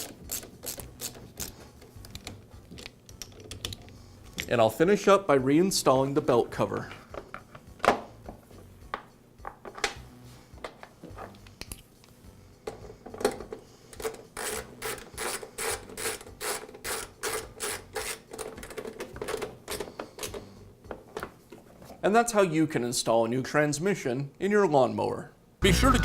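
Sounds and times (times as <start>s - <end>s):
hand tool clicking: 0.0s - 3.9s, 13.9s - 18.5s.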